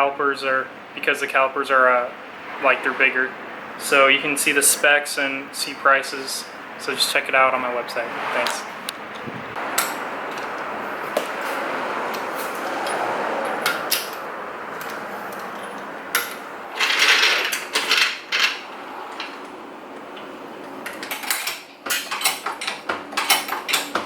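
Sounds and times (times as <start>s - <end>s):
steady background hiss: 0.0s - 23.9s
metal tools clinking: 11.4s - 19.4s, 20.8s - 24.0s.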